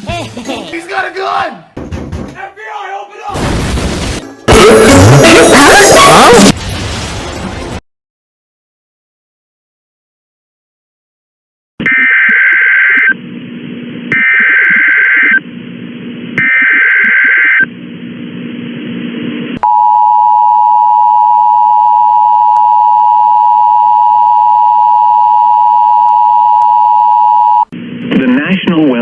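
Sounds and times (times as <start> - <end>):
harsh data tone bursts: 4.5 - 6.5.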